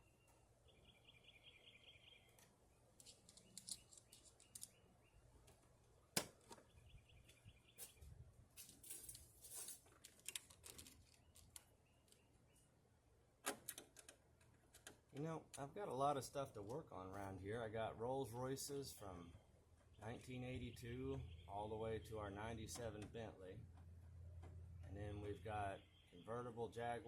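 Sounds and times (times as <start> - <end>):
faint high chirping: 0.0 - 5.3.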